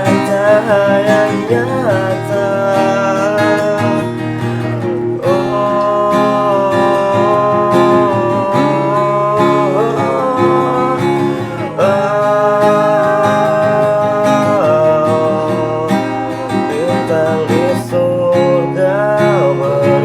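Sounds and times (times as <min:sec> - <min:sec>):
acoustic guitar strumming chords: 0:00.0 - 0:20.0
sliding melody of long held notes: 0:00.0 - 0:20.0.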